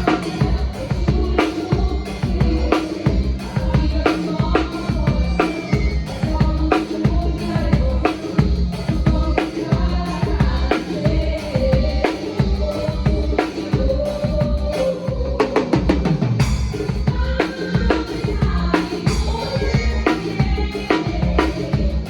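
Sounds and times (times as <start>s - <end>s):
drum kit groove: 0.0s - 22.0s
steady bass: 0.0s - 22.0s.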